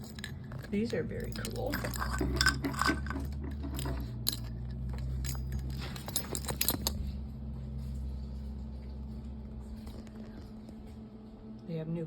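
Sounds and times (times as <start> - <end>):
plastic figures clicking and rattling: 0.0 - 7.0
low electrical hum: 0.0 - 12.0.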